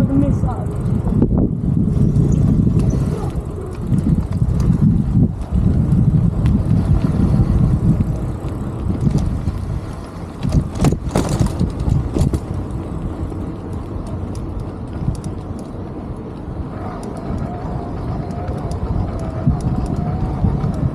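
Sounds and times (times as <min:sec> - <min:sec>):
road and wind noise: 0:00.0 - 0:20.9.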